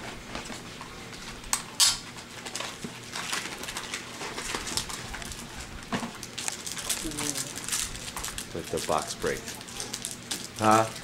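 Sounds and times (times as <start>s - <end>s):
card wrappers rustling: 6.2s - 11.0s.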